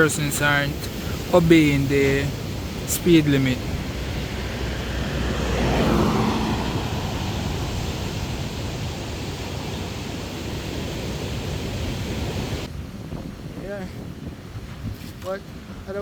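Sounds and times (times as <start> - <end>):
wind rushing: 0.0 - 15.0
surf: 0.0 - 15.4
vehicle passing by: 3.2 - 10.7.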